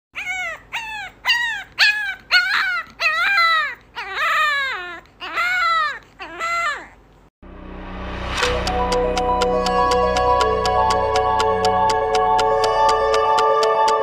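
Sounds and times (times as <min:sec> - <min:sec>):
dog howling: 0:00.2 - 0:06.9
dog yelping: 0:00.2 - 0:07.1.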